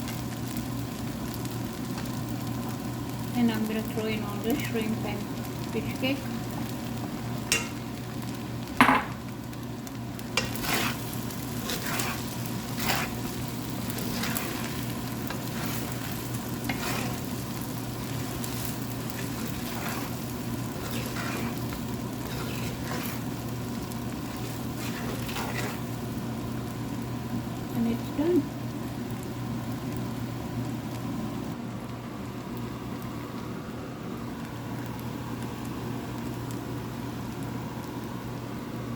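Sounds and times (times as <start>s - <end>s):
food sizzling in a pan: 0.0s - 38.9s
spatula stirring and scraping: 7.4s - 7.8s, 10.2s - 26.3s.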